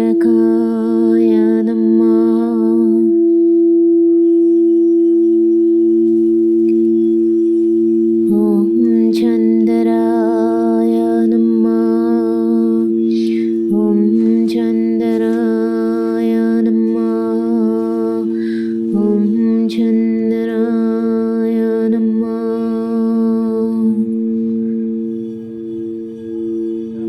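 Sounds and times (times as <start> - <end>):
person singing wordless melody: 0.0 - 4.0, 8.1 - 25.2
steady held drone: 0.0 - 27.0.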